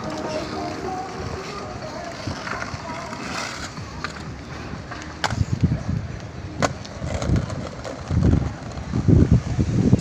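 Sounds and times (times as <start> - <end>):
wind buffeting microphone: 3.8 - 10.0.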